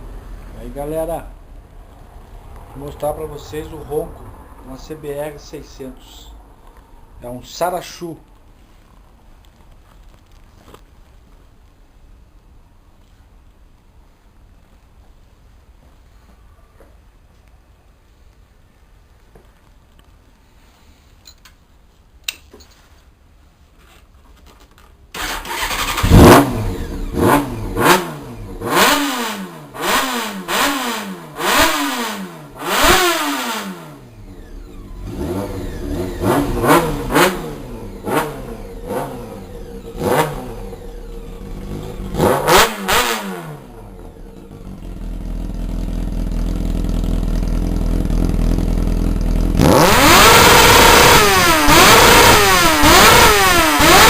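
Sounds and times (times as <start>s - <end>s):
motorcycle engine revving: 25.2s - 54.0s.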